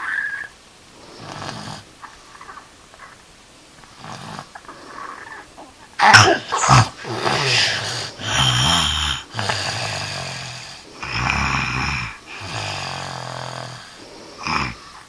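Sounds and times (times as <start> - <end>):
child snoring: 1.2 - 1.9, 4.0 - 5.4, 6.0 - 15.0.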